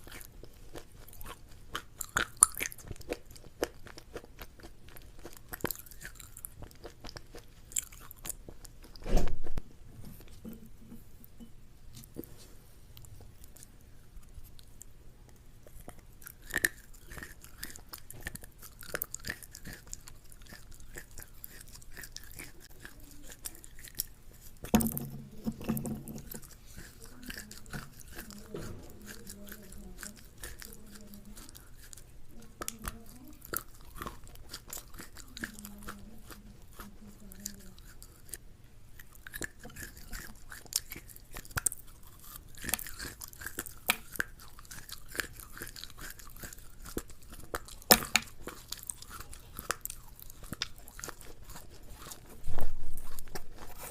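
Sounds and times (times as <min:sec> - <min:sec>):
chewing and crunching food: 0:00.0 - 0:53.9.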